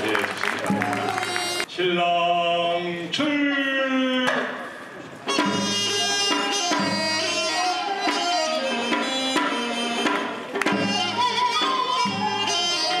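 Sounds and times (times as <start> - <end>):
traditional ceremonial melody: 0.0 - 1.8, 4.9 - 13.0
drum strokes: 5.2 - 12.6.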